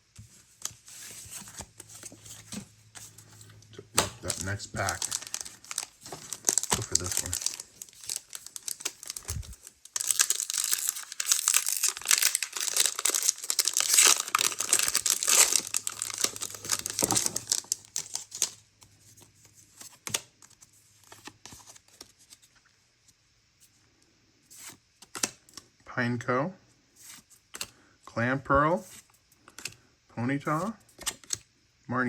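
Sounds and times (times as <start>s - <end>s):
cards clicking and tapping: 3.4s - 18.6s
foil pack tearing and crinkling: 4.0s - 18.6s.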